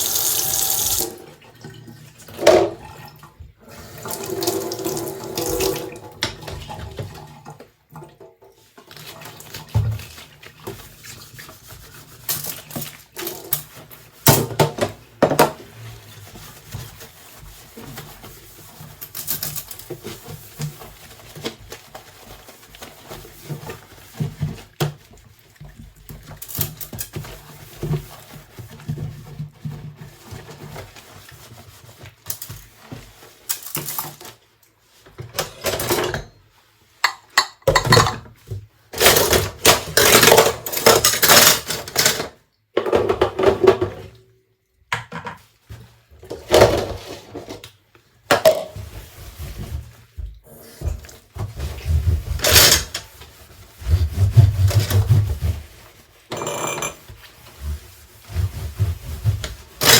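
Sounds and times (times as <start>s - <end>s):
dishes and cutlery clinking: 37.0s - 38.3s, 56.3s - 57.1s.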